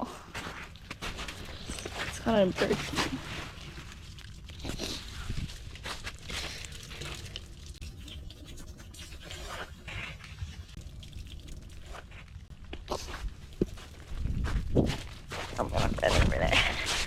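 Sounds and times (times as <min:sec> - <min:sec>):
snow crunching and scraping: 0:00.0 - 0:04.1.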